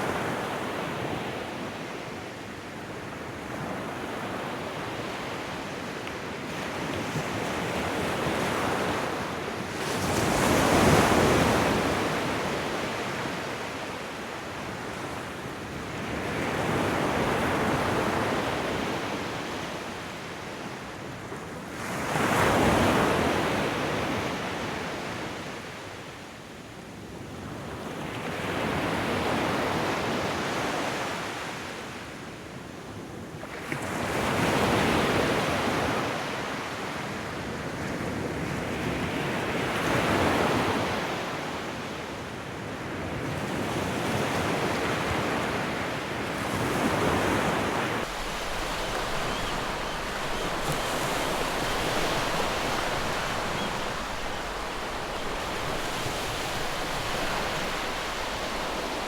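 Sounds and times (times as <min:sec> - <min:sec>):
ocean waves breaking: 0:46.5 - 0:59.0
soft wash of water: 0:48.0 - 0:59.0.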